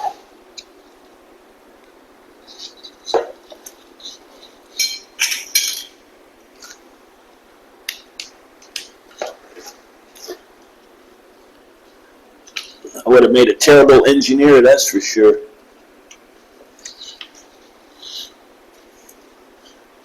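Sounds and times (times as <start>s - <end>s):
light clicks and clinks of parts: 4.7s - 6.0s.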